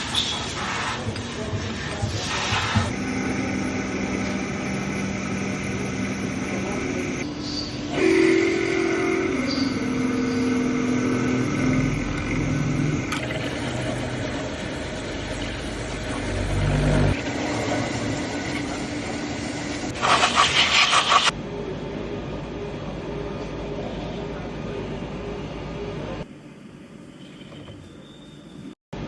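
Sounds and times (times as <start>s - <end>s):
machine tool humming: 0.0s - 21.4s.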